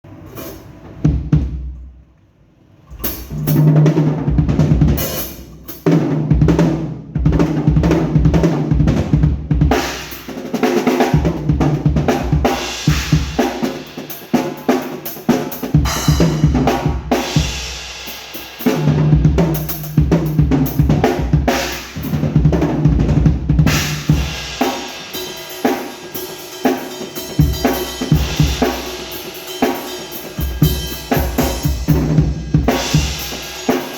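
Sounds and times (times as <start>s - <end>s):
bass drum and snare groove: 2.9s - 33.9s
cymbals: 23.7s - 33.9s.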